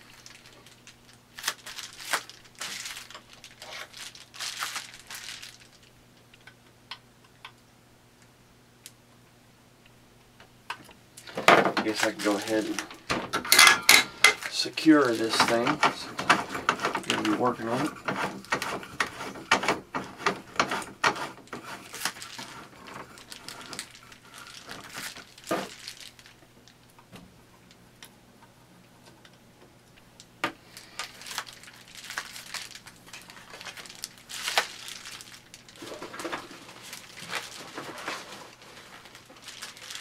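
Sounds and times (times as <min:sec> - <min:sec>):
objects being moved and set down: 0:11.2 - 0:26.3, 0:30.5 - 0:40.0.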